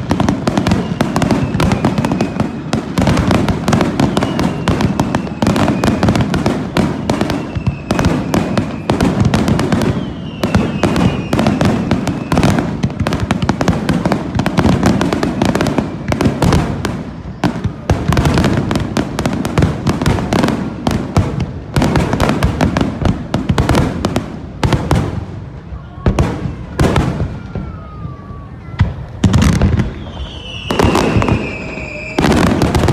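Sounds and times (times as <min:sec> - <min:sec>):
fireworks bangs and crackling: 0:00.0 - 0:32.9
faint whistle: 0:00.6 - 0:02.5, 0:04.0 - 0:06.2, 0:07.2 - 0:09.0, 0:09.8 - 0:12.6, 0:29.7 - 0:32.7.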